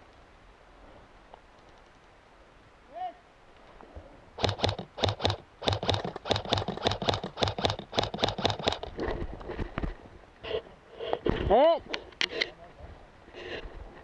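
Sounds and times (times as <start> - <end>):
airsoft rifle shots: 4.4 - 8.9.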